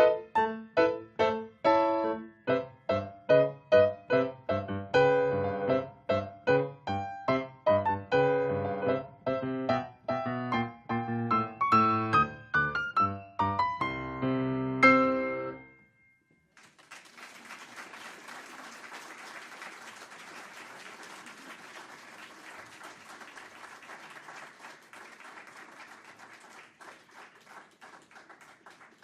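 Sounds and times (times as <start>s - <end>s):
piano chords ringing: 0.0s - 16.4s
audience applauding: 16.5s - 29.0s.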